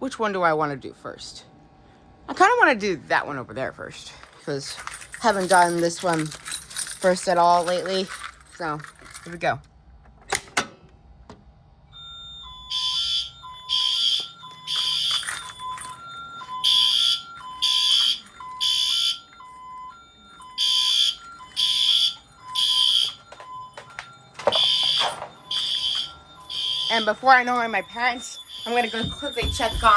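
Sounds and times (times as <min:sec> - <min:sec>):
fire alarm horn blasts: 0:11.9 - 0:29.9.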